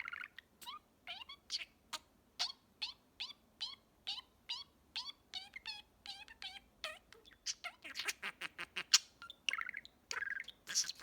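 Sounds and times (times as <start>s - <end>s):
budgerigar chirping: 0.0s - 11.0s.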